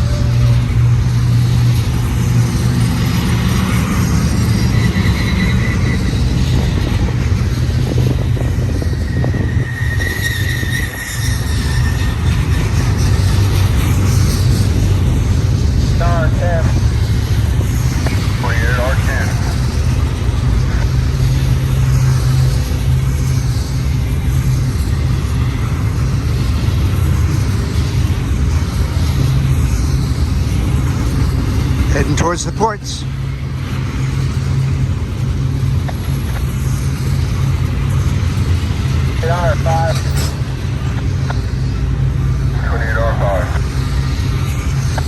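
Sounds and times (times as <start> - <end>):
freight train wheels rumbling: 0.0 - 45.0
high wheel squeal: 4.2 - 6.8, 8.6 - 13.7.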